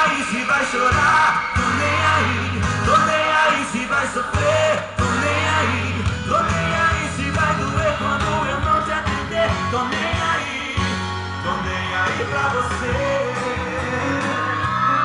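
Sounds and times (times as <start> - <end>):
song with singing and bass: 0.0 - 15.0.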